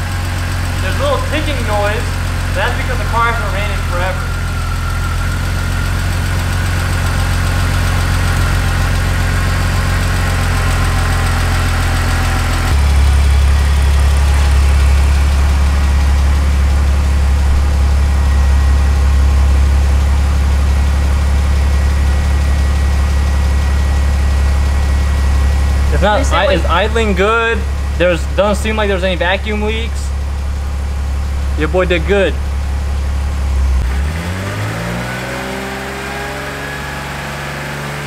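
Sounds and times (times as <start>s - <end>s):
engine ticking: 0.0s - 35.8s
car engine idling: 0.0s - 38.0s.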